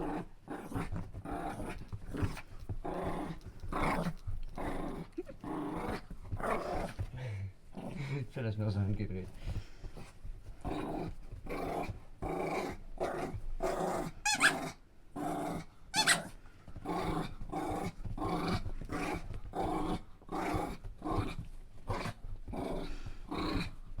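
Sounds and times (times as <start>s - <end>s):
dog growling playfully: 0.0s - 7.1s, 7.7s - 8.2s, 10.0s - 24.0s.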